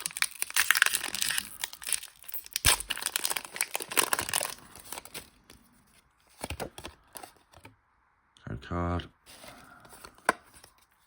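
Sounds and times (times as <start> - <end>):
foil wrapper crinkling: 0.0 - 5.6.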